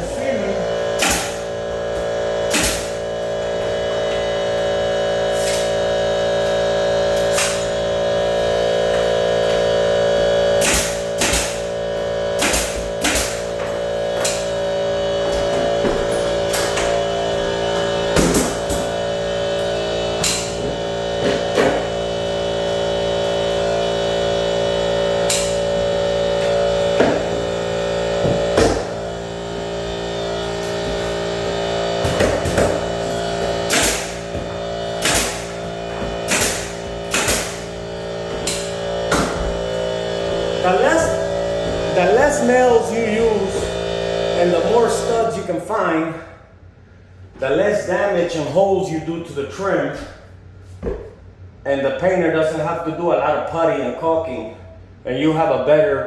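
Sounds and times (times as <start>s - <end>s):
steady hum: 0.0s - 56.0s
sharp knocks: 18.2s - 19.0s, 28.2s - 29.0s, 38.3s - 39.8s.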